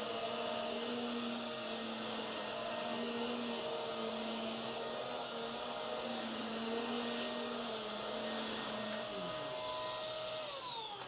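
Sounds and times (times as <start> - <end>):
vacuum cleaner running: 0.0 - 11.0.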